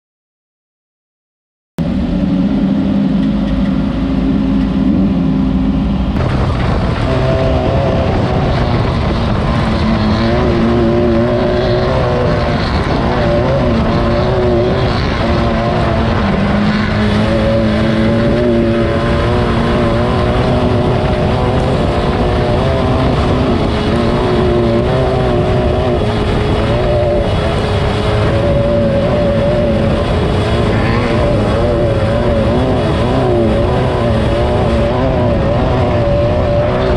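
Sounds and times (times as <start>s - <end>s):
dense steady noise: 1.8s - 36.9s
race car engine revving: 1.8s - 36.9s.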